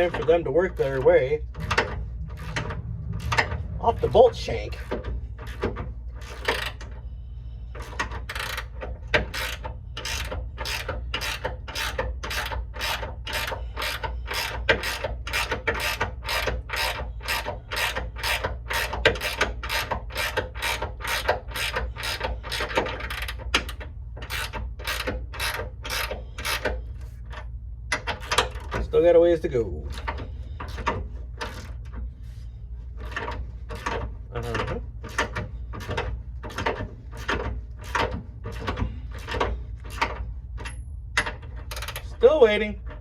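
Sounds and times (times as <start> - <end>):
steady low hum: 0.0 - 43.0
ratchet wrench clicking: 7.8 - 26.7, 33.0 - 42.1.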